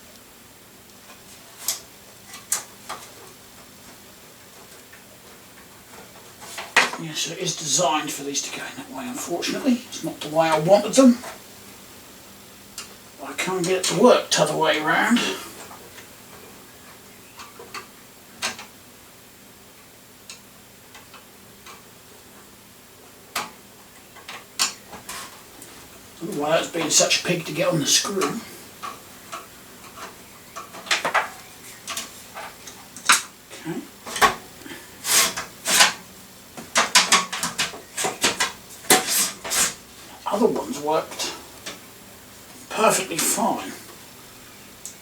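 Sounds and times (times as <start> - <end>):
hard drive scraping in metal cage: 36.8 - 39.9.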